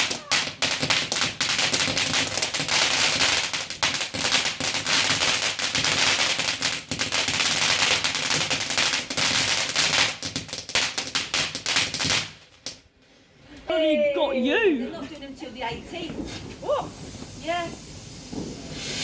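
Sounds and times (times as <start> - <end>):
firework crackling pops: 0.0 - 12.8, 15.1 - 19.0
firework hiss: 15.8 - 19.0.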